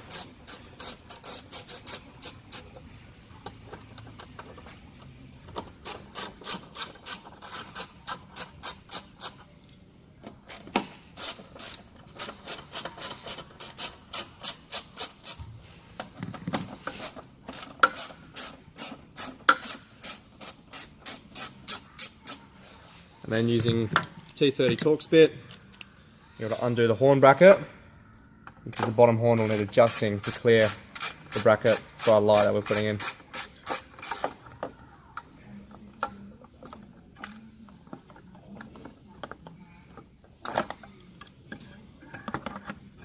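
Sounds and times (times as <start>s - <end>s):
socket ratchet clicking: 10.5s - 15.4s, 29.4s - 34.4s.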